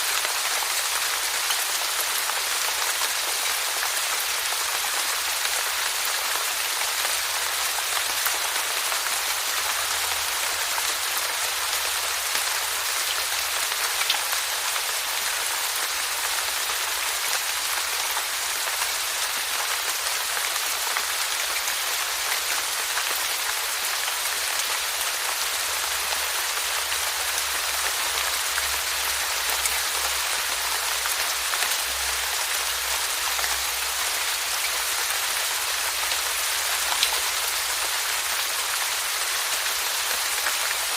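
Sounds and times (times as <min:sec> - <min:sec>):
steady rainfall: 0:00.0 - 0:40.9.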